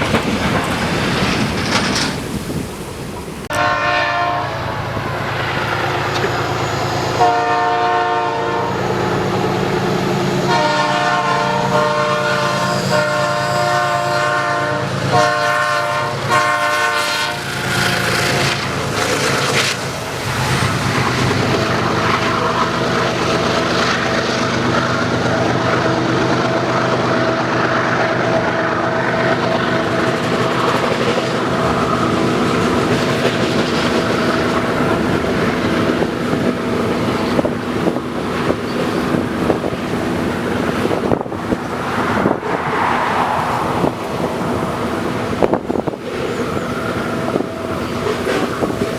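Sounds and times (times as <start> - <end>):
train rolling past: 0.0 - 48.9
train horn blasts: 3.5 - 18.8.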